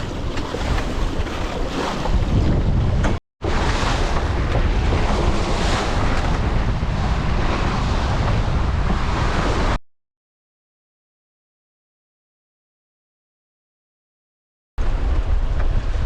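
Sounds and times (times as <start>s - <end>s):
rush of the sea: 0.0s - 9.8s, 14.8s - 16.0s
wind buffeting microphone: 0.0s - 9.8s, 14.8s - 16.0s.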